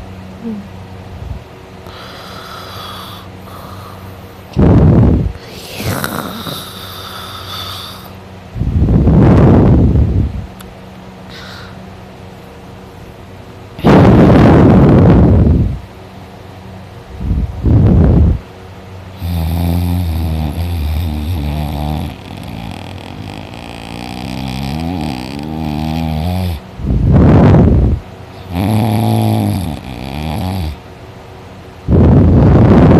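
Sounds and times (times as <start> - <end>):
steady low hum: 0.0 - 32.9
man snoring: 1.9 - 4.1, 5.5 - 8.2, 19.2 - 26.6, 28.4 - 30.8.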